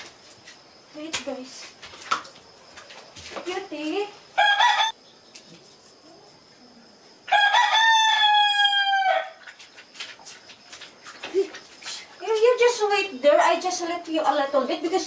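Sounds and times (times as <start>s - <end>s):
rooster crowing: 4.4s - 5.0s, 7.3s - 9.4s.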